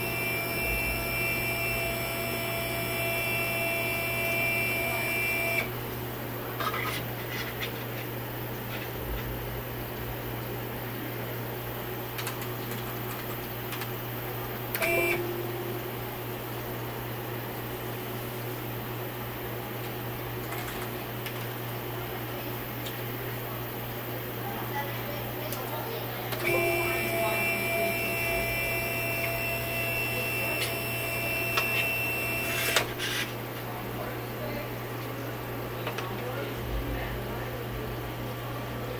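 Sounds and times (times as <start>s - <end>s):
motor whine: 0.0s - 5.7s, 26.4s - 32.9s
stepper drive humming: 0.0s - 6.2s, 13.9s - 18.5s, 26.4s - 33.6s.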